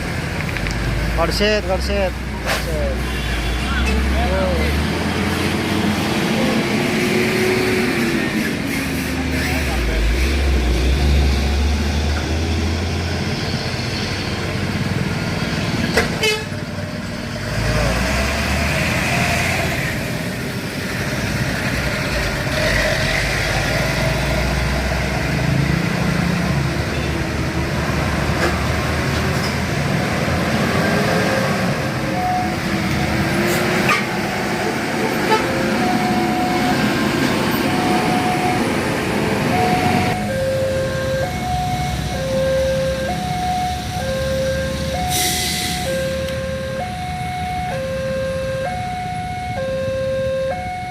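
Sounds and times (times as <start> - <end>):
trucks and buses passing: 0.0 - 50.9
vehicle horns: 2.9 - 4.3, 16.2 - 16.6, 35.0 - 36.0
steady horn tones: 16.2 - 16.6, 35.0 - 36.9.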